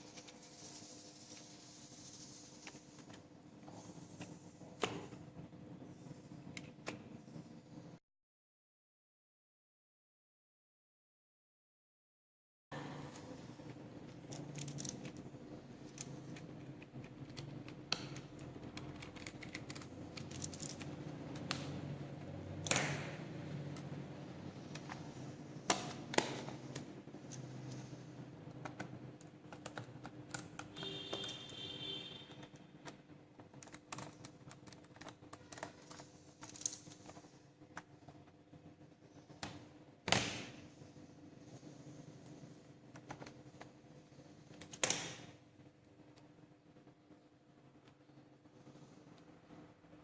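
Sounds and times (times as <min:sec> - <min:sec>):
faint steady hum: 0:12.7 - 0:50.0
sharp plastic snaps: 0:22.6 - 0:23.2, 0:44.6 - 0:45.3.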